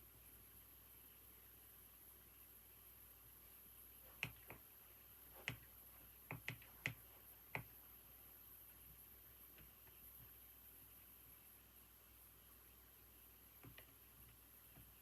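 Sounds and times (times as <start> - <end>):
faint steady hiss: 0.0 - 15.0
keyboard keystroke clicks: 4.2 - 4.6, 6.3 - 7.7.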